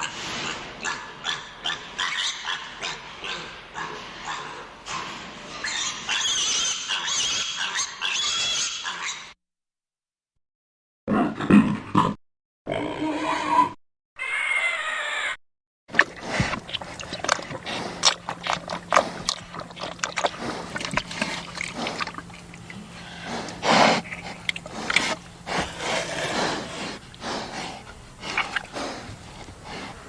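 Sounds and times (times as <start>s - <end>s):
pigs grunting and snorting: 0.0s - 9.4s, 11.1s - 15.3s, 15.9s - 30.0s
steady low hum: 15.9s - 30.0s.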